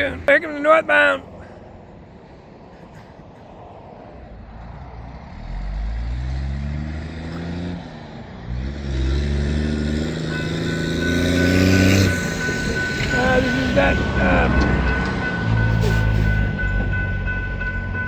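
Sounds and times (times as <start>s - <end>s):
diesel locomotive engine drone: 0.0s - 18.0s
steady high tone: 10.0s - 18.0s.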